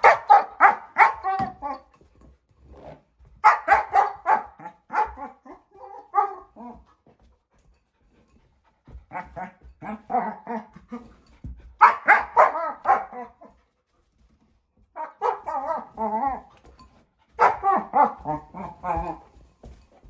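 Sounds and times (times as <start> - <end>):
puppy barking and yipping: 0.0 - 1.9, 3.4 - 6.8, 11.8 - 13.6, 15.0 - 16.5, 17.4 - 19.2.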